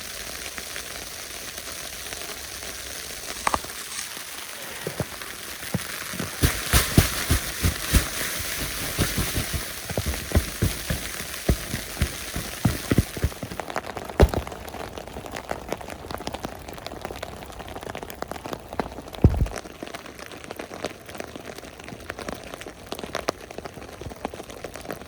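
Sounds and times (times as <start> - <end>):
rain and sleet hissing: 0.0 - 21.4
ice pellets tapping: 4.7 - 13.6, 14.2 - 14.6.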